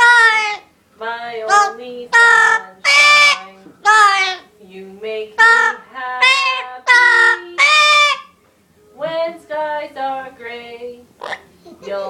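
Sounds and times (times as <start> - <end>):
parrot singing: 0.0 - 0.7, 1.4 - 4.5, 5.4 - 8.4, 11.2 - 12.0.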